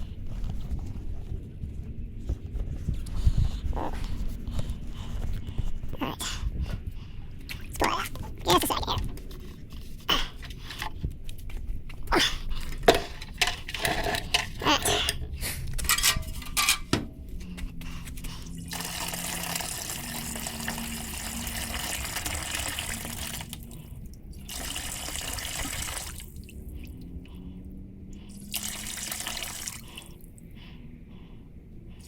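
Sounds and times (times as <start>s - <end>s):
water running into container: 18.4s - 23.8s, 24.4s - 26.5s, 28.3s - 30.2s.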